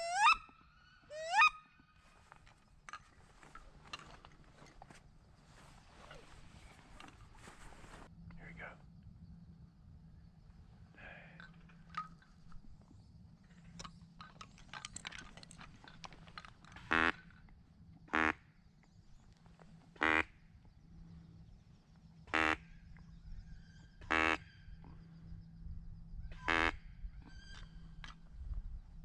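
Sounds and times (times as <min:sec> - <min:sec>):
duck quacks: 0:22.3 - 0:22.6.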